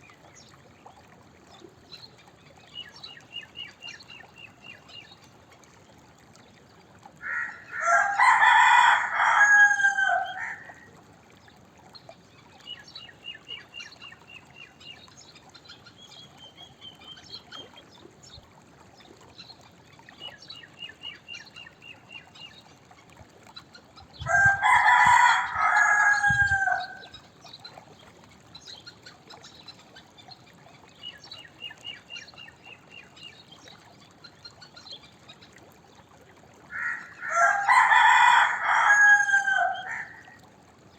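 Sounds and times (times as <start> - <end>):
rooster crowing: 7.2 - 10.7, 24.3 - 27.1, 36.7 - 40.3.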